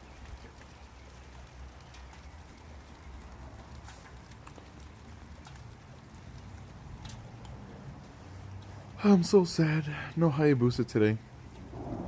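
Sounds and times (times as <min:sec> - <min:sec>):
drips ticking on surfaces: 0:00.0 - 0:10.2
steady rain falling: 0:00.0 - 0:12.0.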